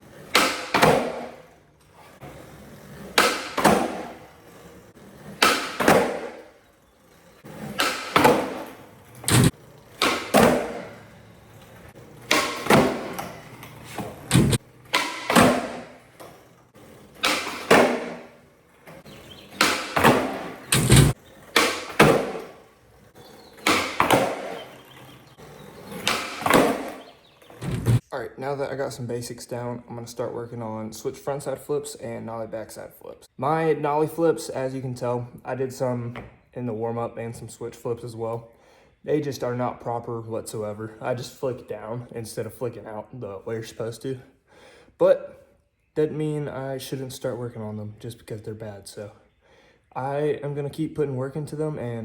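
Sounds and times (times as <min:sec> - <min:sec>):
skateboard pops and landings: 0:00.0 - 0:01.6, 0:02.2 - 0:06.6, 0:07.4 - 0:11.2, 0:12.0 - 0:28.0
skateboard wheels rolling on pavement: 0:00.0 - 0:28.0.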